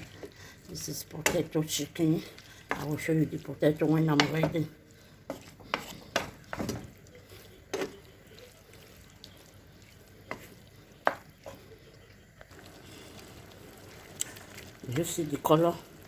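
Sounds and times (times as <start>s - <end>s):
food sizzling: 0.0s - 16.0s.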